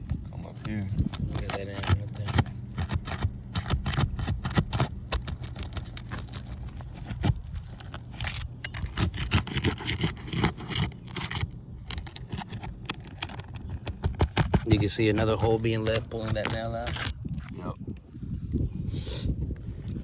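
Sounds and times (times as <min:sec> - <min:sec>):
steady low hum: 0:00.0 - 0:20.0
metal tool scraping and clicking: 0:07.8 - 0:14.6.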